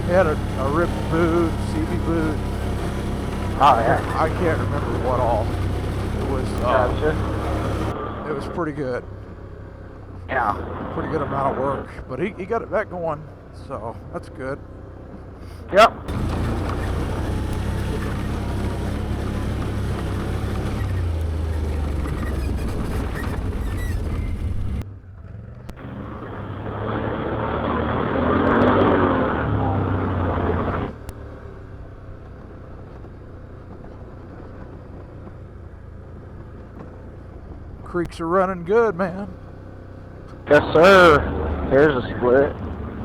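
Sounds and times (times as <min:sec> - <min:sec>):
atv engine running: 0:00.0 - 0:43.0
rushing noise: 0:40.5 - 0:43.0.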